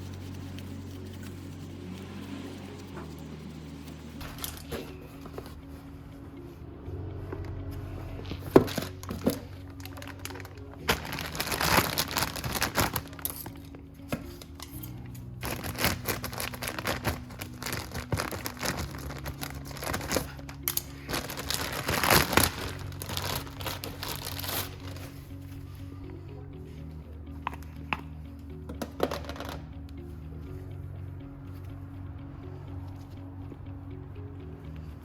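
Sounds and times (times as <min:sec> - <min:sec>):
soft background music: 0:00.0 - 0:35.0
packaging crinkling and rustling: 0:08.5 - 0:13.6, 0:15.4 - 0:25.0.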